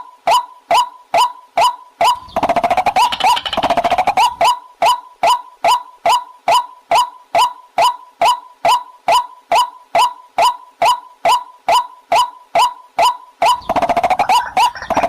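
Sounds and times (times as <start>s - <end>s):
waterhen calling sharp notes: 2.0s - 5.4s, 13.4s - 15.0s.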